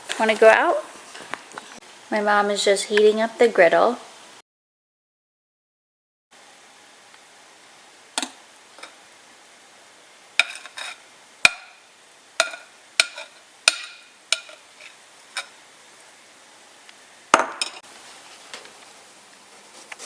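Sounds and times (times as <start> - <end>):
faint hiss: 6.4 - 20.0
kitchen utensils clinking: 10.4 - 11.8, 12.4 - 15.6, 17.4 - 17.8.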